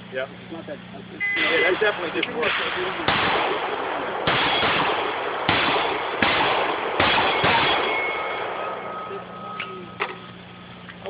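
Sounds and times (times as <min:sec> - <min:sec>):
echoing pistol shots: 0:02.4 - 0:09.0
thin metallic ringing: 0:07.2 - 0:10.8.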